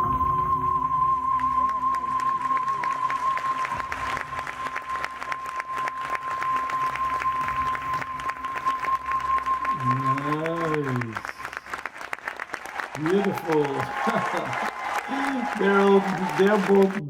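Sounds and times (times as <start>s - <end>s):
steady high tone: 0.0s - 11.8s
music: 0.0s - 16.9s
audience applauding: 1.1s - 17.0s.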